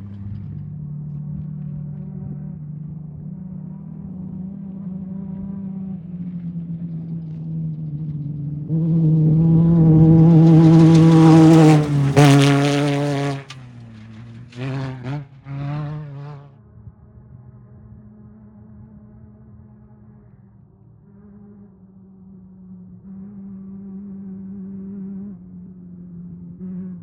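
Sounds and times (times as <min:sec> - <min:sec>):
engine revs: 0:00.0 - 0:16.6
race vehicle engine passing by: 0:00.0 - 0:27.0.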